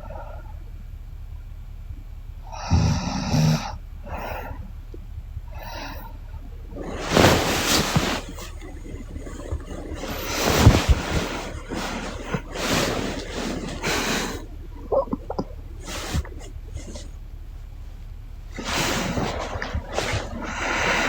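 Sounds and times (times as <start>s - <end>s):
woman breathing: 2.5s - 4.8s, 5.5s - 17.4s, 18.6s - 21.0s
woman snoring: 2.6s - 4.4s.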